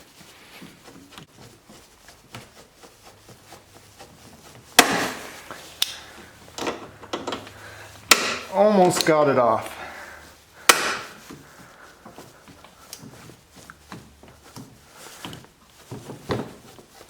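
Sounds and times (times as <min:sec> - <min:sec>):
pliers scraping and clicking on metal: 0:05.7 - 0:08.4.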